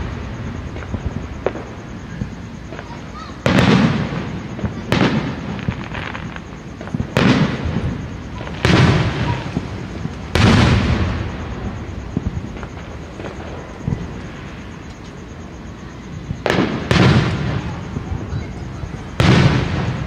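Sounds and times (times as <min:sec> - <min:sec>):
fireworks booming: 0:00.0 - 0:20.0
fireworks popping: 0:00.0 - 0:20.0.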